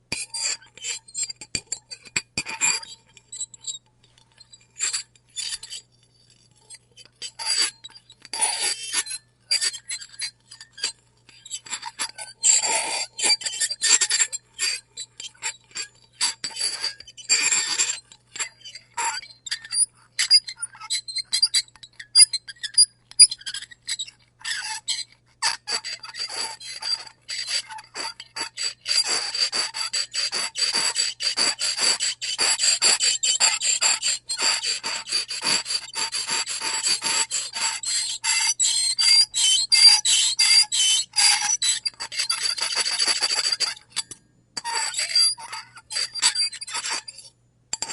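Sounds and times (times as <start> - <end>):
fork scraping plate: 0.2 - 24.3, 24.9 - 47.9.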